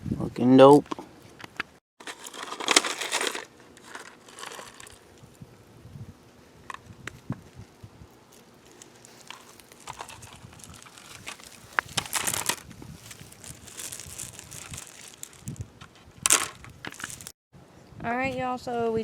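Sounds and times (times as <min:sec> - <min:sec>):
rocks clicking and scraping: 0:02.0 - 0:05.1, 0:08.6 - 0:17.4.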